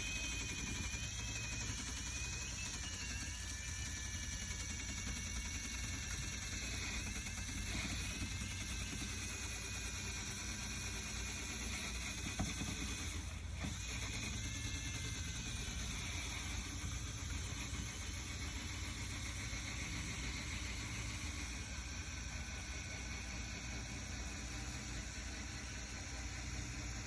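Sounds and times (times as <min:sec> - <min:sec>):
power sander on metal: 0:00.0 - 0:26.2.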